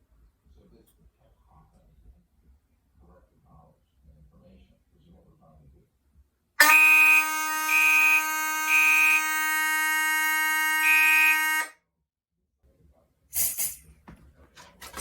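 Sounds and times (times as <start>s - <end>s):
mechanical horn blasts: 6.6s - 11.8s
steady alarm horn tone: 6.6s - 11.8s.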